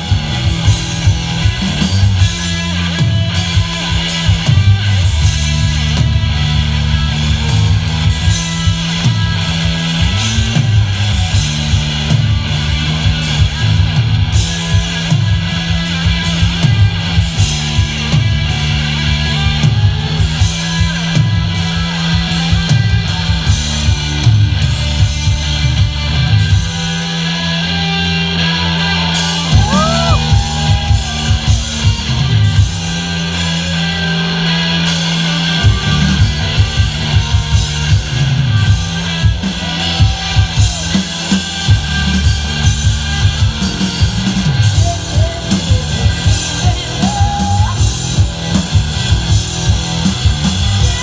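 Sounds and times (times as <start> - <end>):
bass guitar: 0.0 - 51.0
drum kit: 0.0 - 51.0
electric guitars: 0.0 - 51.0.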